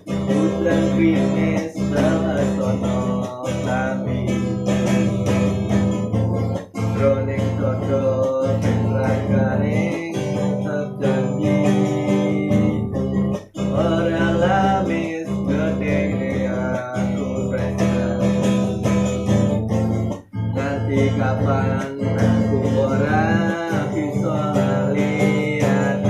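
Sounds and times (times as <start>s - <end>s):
acoustic guitar music: 0.0s - 26.0s.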